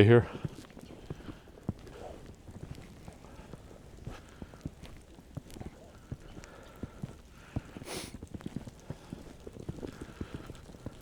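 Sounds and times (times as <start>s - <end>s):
short hiss: 7.8s - 8.2s.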